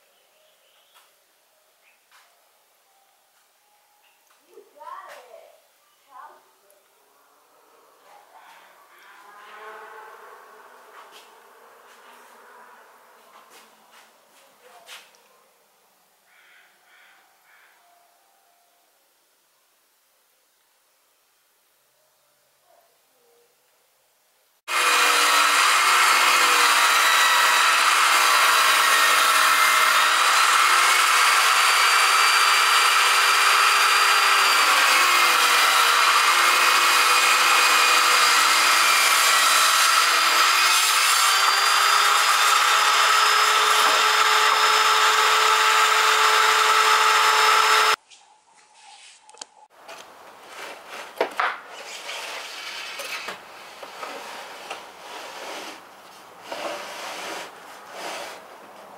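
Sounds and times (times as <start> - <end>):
table saw cutting wood: 24.7 - 48.0, 51.8 - 55.8, 56.4 - 58.4.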